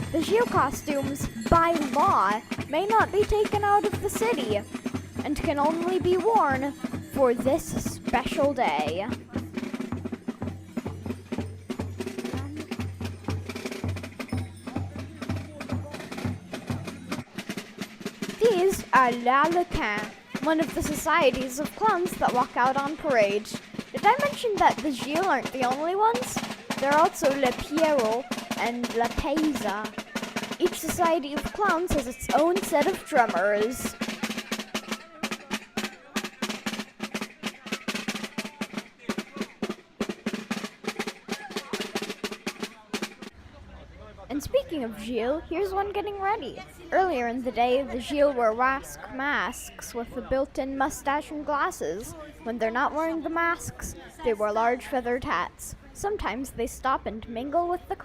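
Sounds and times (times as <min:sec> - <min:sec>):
bass drum march beat: 0:00.0 - 0:43.4
sharp clicking drum strikes: 0:00.0 - 0:43.4
crowd voices: 0:00.0 - 0:58.0.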